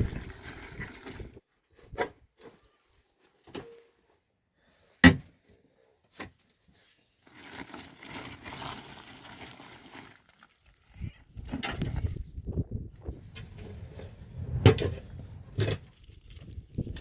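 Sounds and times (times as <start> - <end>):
rustling noise: 11.8 - 17.0.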